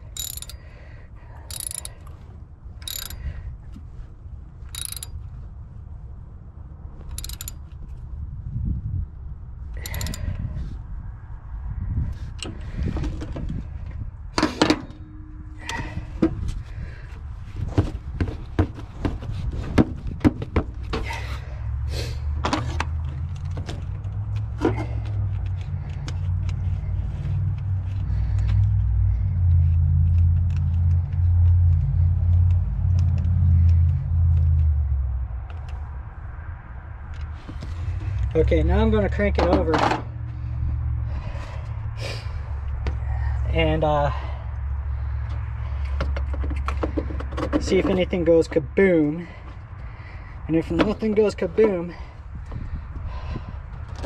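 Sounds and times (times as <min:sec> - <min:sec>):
metal tools clanking: 0:00.0 - 0:00.7, 0:01.4 - 0:02.1, 0:02.8 - 0:03.3, 0:04.8 - 0:05.2, 0:07.1 - 0:07.6, 0:09.8 - 0:10.3.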